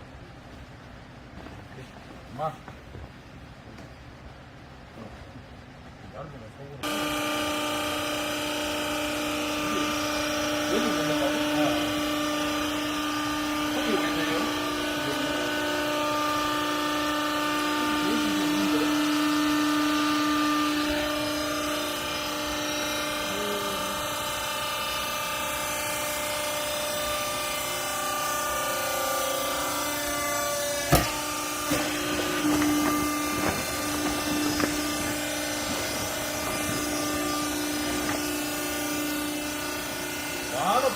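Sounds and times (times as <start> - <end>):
electric motor and hydraulic pump humming: 0.0 - 40.9
sharp knock: 30.9 - 31.9.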